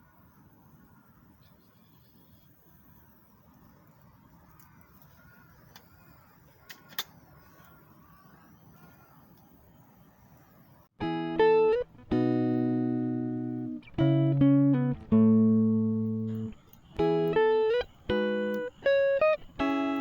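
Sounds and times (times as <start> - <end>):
plucked guitar music: 11.0 - 20.0.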